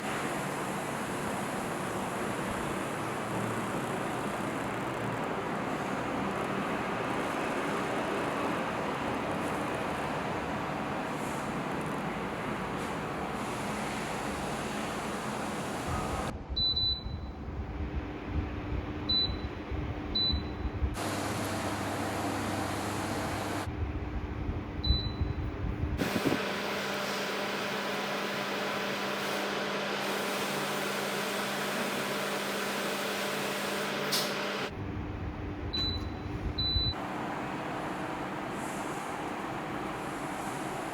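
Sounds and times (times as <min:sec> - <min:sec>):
air cooler fan running: 0:17.4 - 0:40.9.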